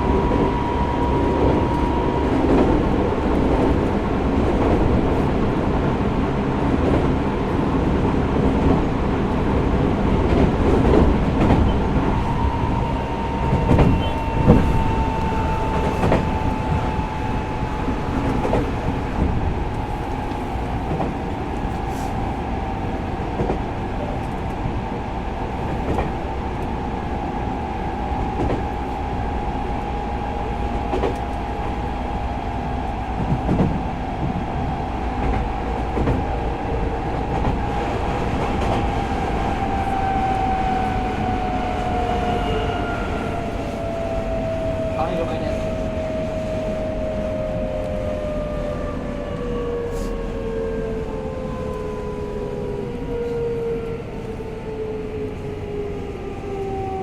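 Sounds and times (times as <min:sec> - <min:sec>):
subway car rolling noise: 0:00.0 - 0:57.0.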